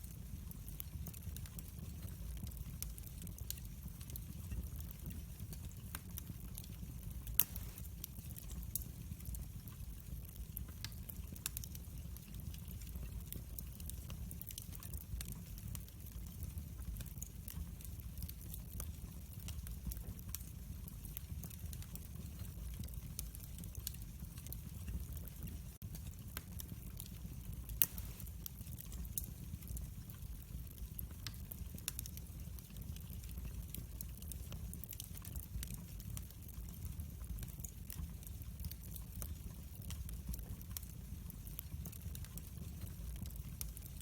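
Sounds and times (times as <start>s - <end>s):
wood fire crackling and popping: 0.0s - 44.0s.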